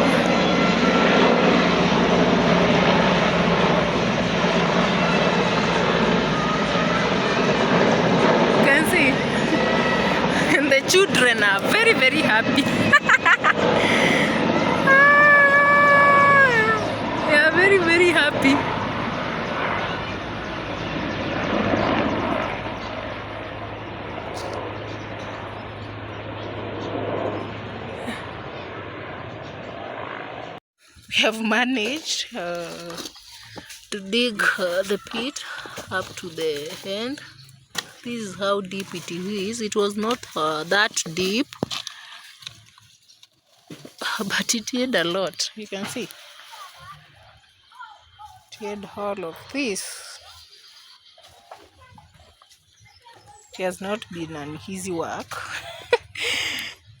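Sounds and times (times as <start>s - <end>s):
plane engine passing overhead: 0.0s - 31.1s.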